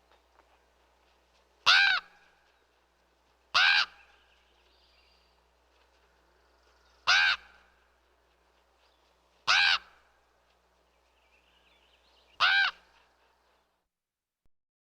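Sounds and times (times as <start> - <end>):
raven calling: 1.6 - 2.3, 3.5 - 4.4, 7.0 - 7.7, 9.4 - 10.0, 12.4 - 12.9.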